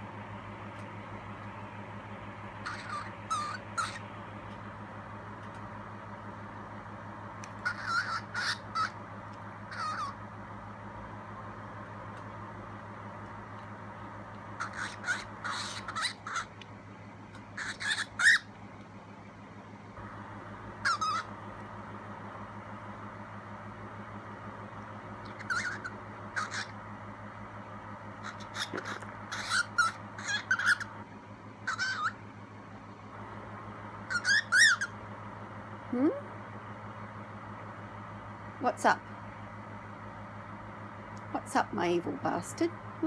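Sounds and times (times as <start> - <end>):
steady low hum: 0.0 - 43.0
cockatiel squawking: 2.6 - 4.1, 7.4 - 9.0, 9.7 - 10.2, 14.6 - 16.6, 17.3 - 18.5, 20.8 - 21.3, 25.2 - 26.8, 28.2 - 31.0, 31.6 - 32.2, 34.1 - 35.0.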